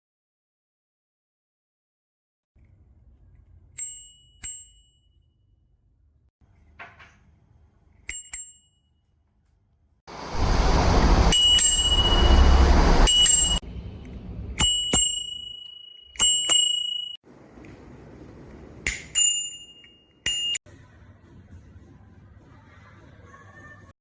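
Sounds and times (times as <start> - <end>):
bicycle bell ringing: 3.8 - 5.3, 11.3 - 13.6, 14.6 - 17.2, 19.0 - 20.6.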